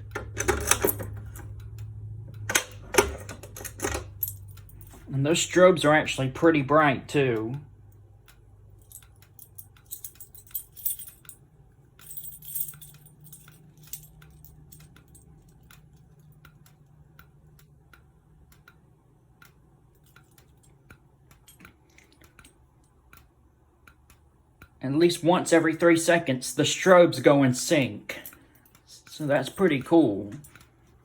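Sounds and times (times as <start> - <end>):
low steady hum: 0.0 - 31.0
keys jangling: 3.6 - 5.0, 8.8 - 11.4, 12.0 - 15.6.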